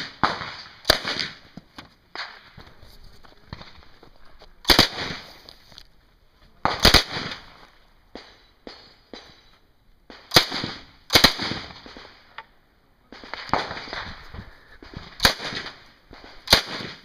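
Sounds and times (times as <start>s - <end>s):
submachine gun shots echoing: 0.0s - 1.4s, 4.6s - 5.3s, 6.6s - 7.6s, 10.1s - 12.3s, 14.8s - 17.0s.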